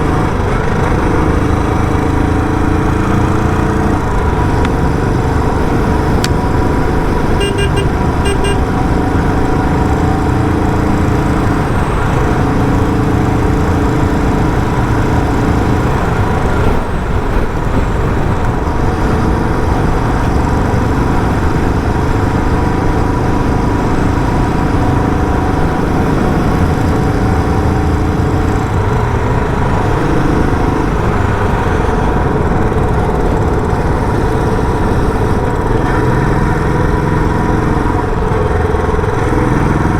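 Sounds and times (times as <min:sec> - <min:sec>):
motorcycle engine running: 0:00.0 - 0:39.9
horn short beeps: 0:07.3 - 0:08.8.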